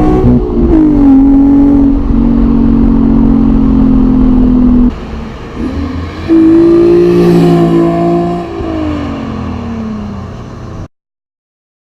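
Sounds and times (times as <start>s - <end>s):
car engine revving past: 5.1s - 10.3s.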